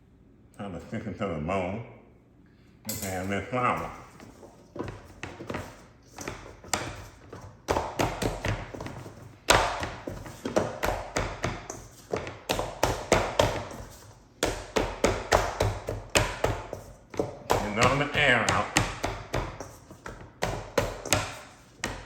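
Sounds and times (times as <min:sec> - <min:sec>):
dough thumped and slapped by hand: 0:04.8 - 0:22.0.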